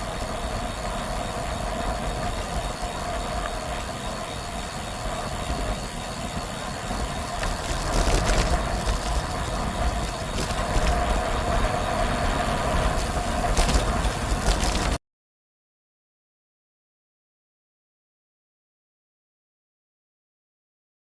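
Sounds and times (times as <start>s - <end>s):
bicycle tyre road noise: 0.0s - 15.0s
steady hum: 0.0s - 15.0s
wind buffeting microphone: 0.0s - 15.0s.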